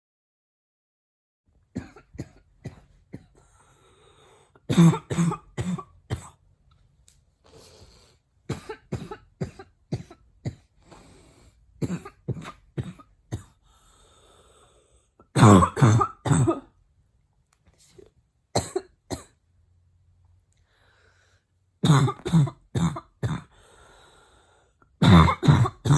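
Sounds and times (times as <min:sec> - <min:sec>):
woman's barking cough: 0:04.7 - 0:06.4, 0:08.5 - 0:10.7, 0:11.8 - 0:13.6, 0:15.3 - 0:16.7, 0:18.6 - 0:19.3, 0:21.8 - 0:23.5, 0:25.0 - 0:25.9.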